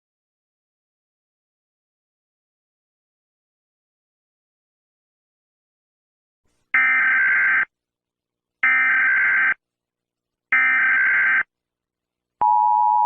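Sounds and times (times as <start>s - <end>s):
two-tone alarm: 6.8s - 7.7s, 8.6s - 9.6s, 10.5s - 11.5s.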